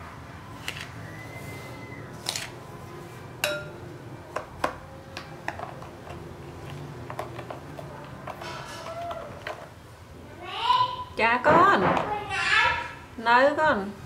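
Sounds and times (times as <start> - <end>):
kitchen utensils and dishes clinking: 3.4 - 3.8, 5.5 - 9.7.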